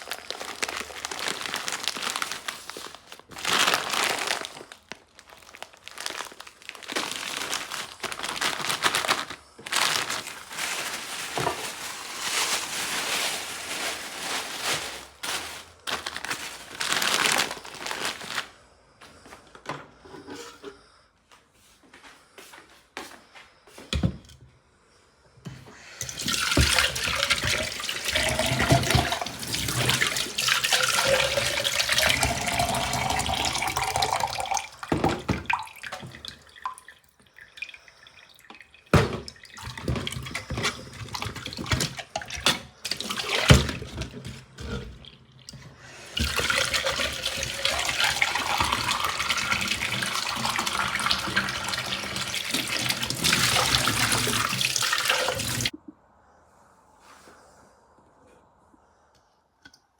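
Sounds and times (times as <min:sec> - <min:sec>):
tap water filling a container: 0:26.0 - 0:44.3, 0:45.0 - 0:55.7.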